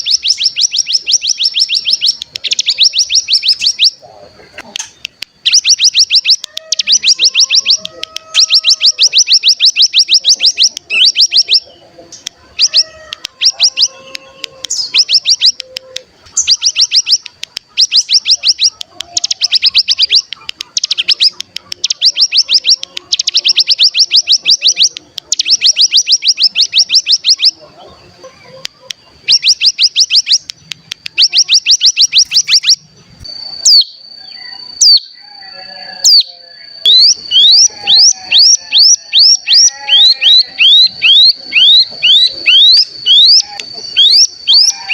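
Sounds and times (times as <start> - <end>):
bird trilling high notes: 12.6 - 27.6, 31.1 - 44.9.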